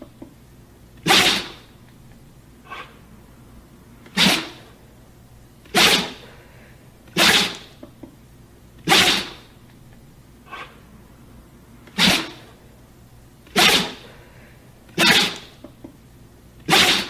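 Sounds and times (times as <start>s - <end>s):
dog sneezing: 1.0s - 1.7s, 2.6s - 3.0s, 4.0s - 4.7s, 5.6s - 6.4s, 7.1s - 7.8s, 8.8s - 9.5s, 10.5s - 10.8s, 11.8s - 12.6s, 13.5s - 14.2s, 14.9s - 15.6s, 16.6s - 17.0s.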